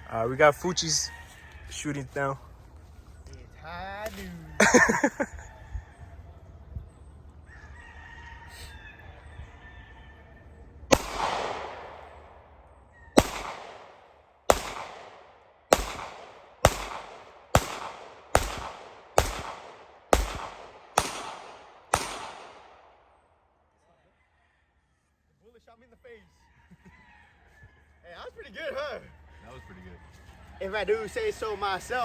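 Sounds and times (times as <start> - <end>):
gunshots with echo: 10.9 - 23.2.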